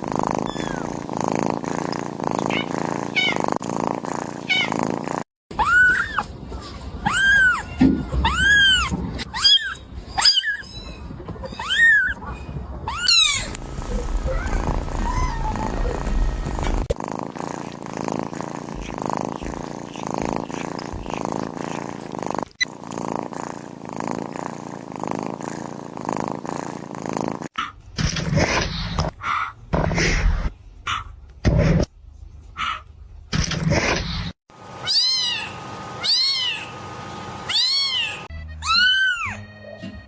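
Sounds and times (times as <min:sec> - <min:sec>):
cat purring: 0:00.0 - 0:05.3, 0:13.2 - 0:27.5
kitten meowing: 0:02.4 - 0:03.4, 0:12.9 - 0:16.8, 0:34.8 - 0:36.7, 0:37.5 - 0:39.4.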